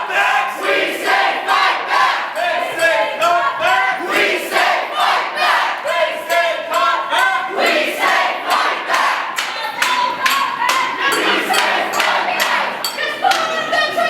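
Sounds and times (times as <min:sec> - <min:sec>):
crowd shouting and chanting: 0:00.0 - 0:14.0
clapping: 0:08.9 - 0:13.7.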